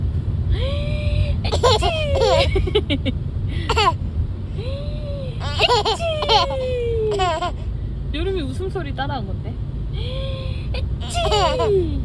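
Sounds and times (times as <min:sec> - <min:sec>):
baby giggling: 0:01.5 - 0:02.9, 0:03.7 - 0:04.0, 0:05.4 - 0:07.6, 0:11.0 - 0:12.0.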